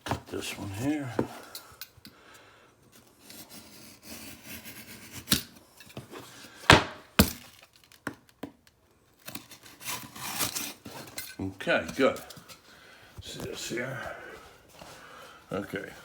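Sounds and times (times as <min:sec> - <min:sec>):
blade cutting drywall: 0:03.3 - 0:05.5.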